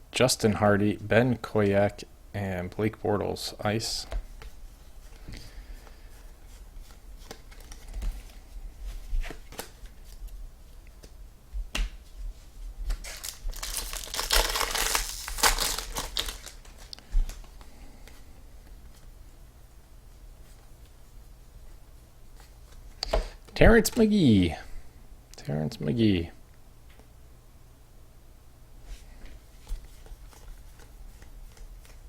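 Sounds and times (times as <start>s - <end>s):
wrapper tearing and crinkling: 12.9s - 17.0s.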